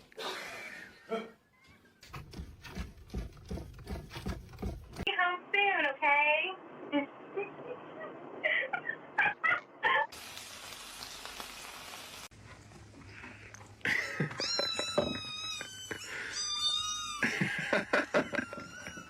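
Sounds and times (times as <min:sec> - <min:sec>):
cat meowing: 0:14.4 - 0:17.2.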